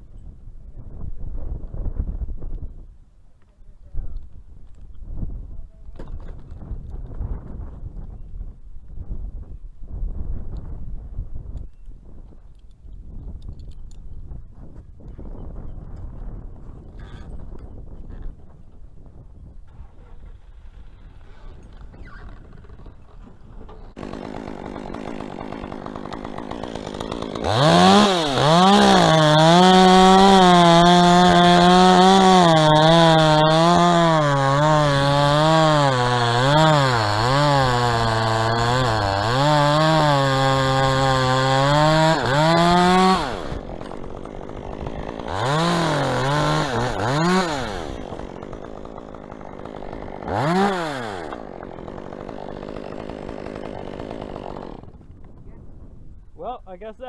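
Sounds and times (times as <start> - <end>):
chainsaw cutting wood: 19.6 - 55.4.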